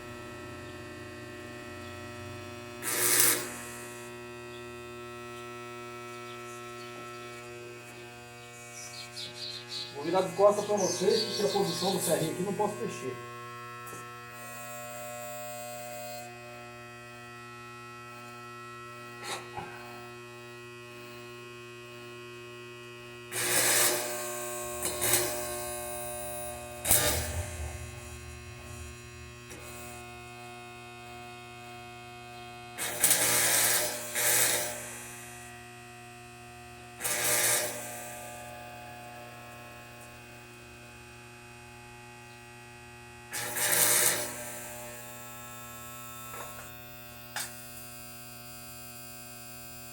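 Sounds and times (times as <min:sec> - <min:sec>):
welding machine humming: 0:00.0 - 0:42.7, 0:43.4 - 0:49.9
welding arc crackle: 0:02.8 - 0:06.2, 0:07.3 - 0:16.3, 0:23.4 - 0:30.8, 0:32.8 - 0:35.2, 0:37.0 - 0:38.0, 0:43.4 - 0:49.6.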